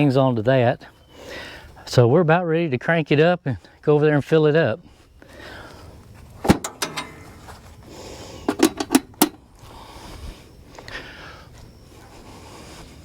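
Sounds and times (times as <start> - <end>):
equipment clicking and knocking: 6.4 - 7.5, 8.5 - 9.4.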